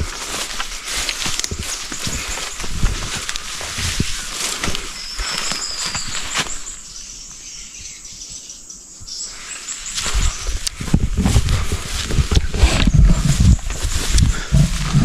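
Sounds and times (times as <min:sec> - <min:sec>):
rustling through undergrowth: 0:00.0 - 0:15.0
faint high chirping: 0:04.2 - 0:10.7.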